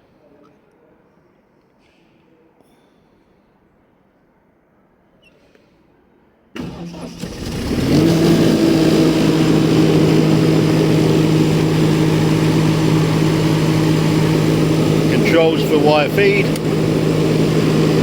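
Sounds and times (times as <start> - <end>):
diesel engine starting and running: 6.6 - 18.0.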